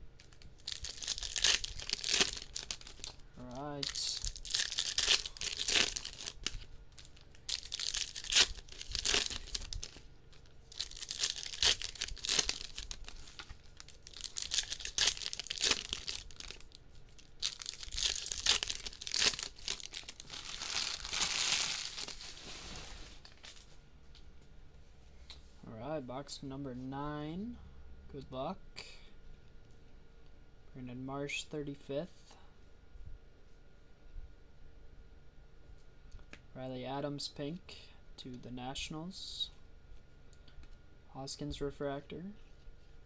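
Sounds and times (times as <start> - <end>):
wrapper tearing: 0.2 - 23.7
wrappers crinkling: 0.2 - 23.8.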